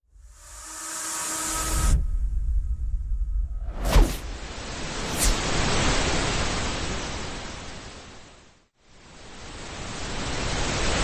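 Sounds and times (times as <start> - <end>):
hissing whoosh riser: 3.6 - 6.0.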